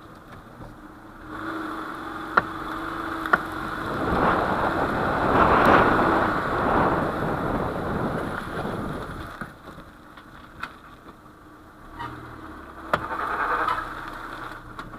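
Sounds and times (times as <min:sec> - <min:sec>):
low steady hum: 0:00.0 - 0:14.9
loud rushing: 0:02.5 - 0:09.3.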